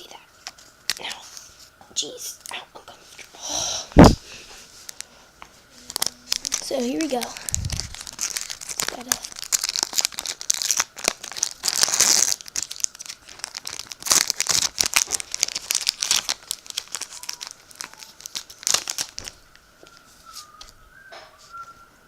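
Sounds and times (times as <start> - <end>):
foil wrapper crinkling and tearing: 0.4 - 1.2, 5.8 - 20.7.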